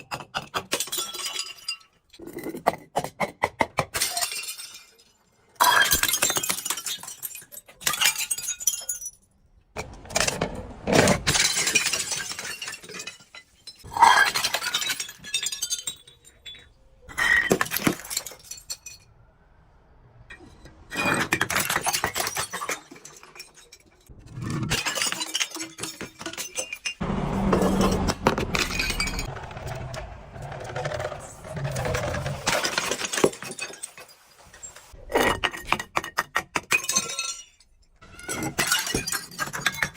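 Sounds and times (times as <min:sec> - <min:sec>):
glass breaking and crunching: 0:00.3 - 0:02.2, 0:03.8 - 0:09.3, 0:10.1 - 0:19.1, 0:20.9 - 0:29.3, 0:31.2 - 0:39.9.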